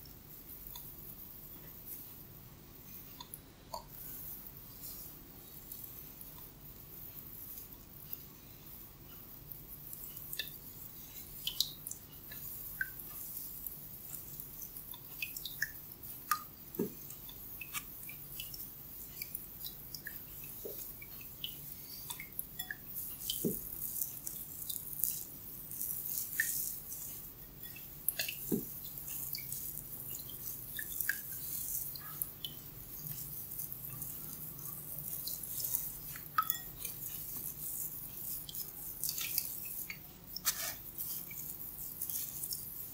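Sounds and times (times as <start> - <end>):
faint steady hiss: 0.0 - 42.9
hair crackling and snapping: 23.0 - 42.9.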